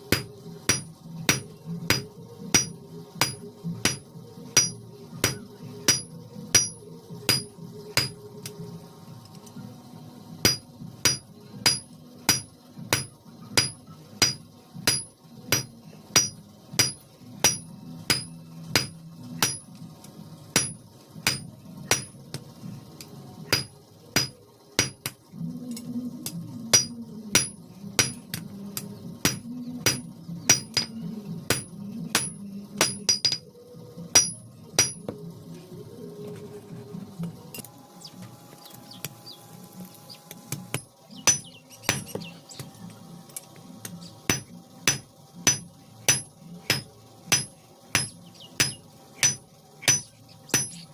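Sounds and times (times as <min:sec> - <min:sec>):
hammer striking iron on anvil: 0:00.1 - 0:08.2, 0:10.4 - 0:19.8, 0:20.6 - 0:22.4, 0:23.5 - 0:25.2, 0:26.2 - 0:33.5, 0:34.1 - 0:35.2, 0:40.5 - 0:42.3, 0:43.8 - 0:50.9.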